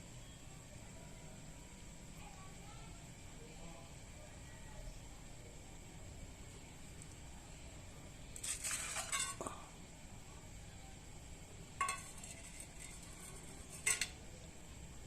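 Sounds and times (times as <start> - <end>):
dishes clinking and rattling: 8.4 - 9.6, 11.8 - 14.2.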